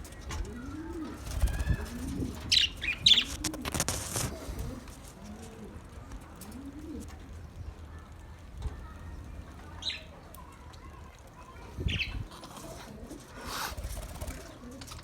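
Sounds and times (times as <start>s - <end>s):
birds chirping: 0.0s - 4.4s, 6.0s - 15.0s
wings flapping: 0.0s - 5.7s, 13.1s - 15.0s
rustling: 0.0s - 7.2s.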